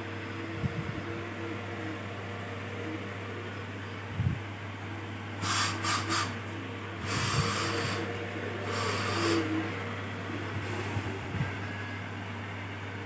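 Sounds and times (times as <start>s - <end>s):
steady low hum: 0.0s - 13.0s
short bursts of hiss: 5.4s - 6.4s, 7.0s - 8.0s, 8.7s - 9.5s.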